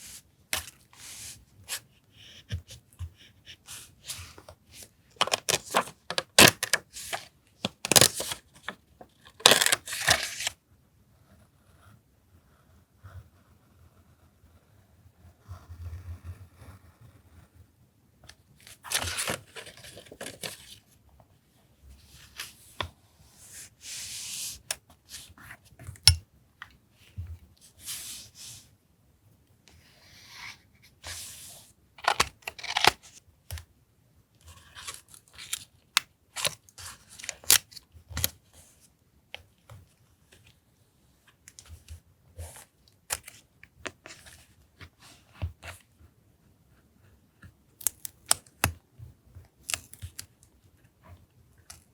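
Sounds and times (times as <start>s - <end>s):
crisp clicks of handling stationery: 49.4s - 50.6s, 51.6s - 51.9s.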